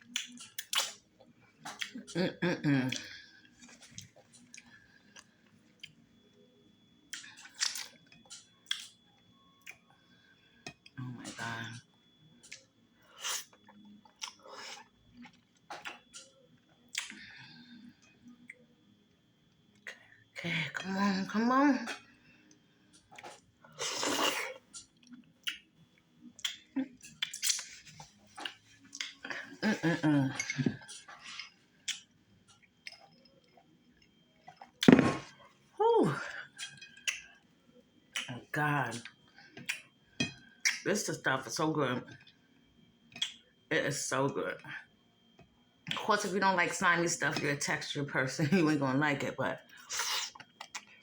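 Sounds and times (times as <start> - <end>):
wet chewing and mouth smacks: 0.0 - 2.1, 7.1 - 9.0, 12.4 - 17.2, 21.9 - 29.4, 30.4 - 35.0, 36.6 - 37.5, 38.1 - 38.4, 39.0 - 40.8, 43.1 - 43.4, 49.7 - 51.0.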